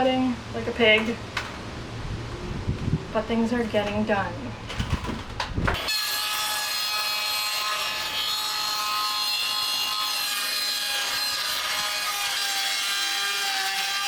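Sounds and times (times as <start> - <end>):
power saw cutting plywood: 5.8 - 14.0.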